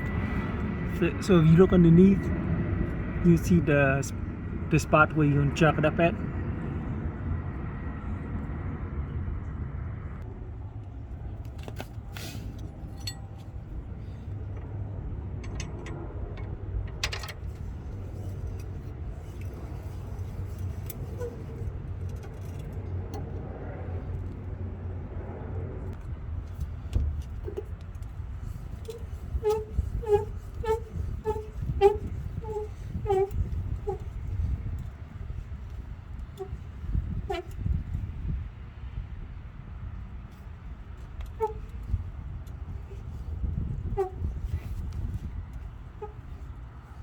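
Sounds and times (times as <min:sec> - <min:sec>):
low rumble: 0:00.0 - 0:11.6
jack handle squeaking: 0:20.7 - 0:23.3, 0:26.8 - 0:38.0, 0:41.1 - 0:46.6.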